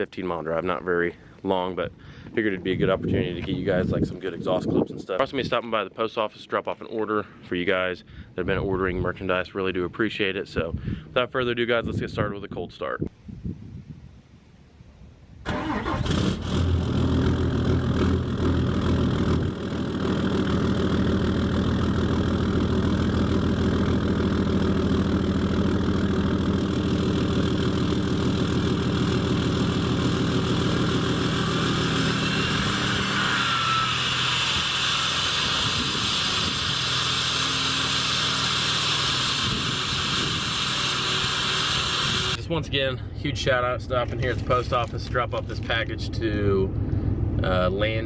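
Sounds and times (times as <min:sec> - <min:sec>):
diesel engine starting and idling: 0:15.4 - 0:48.0.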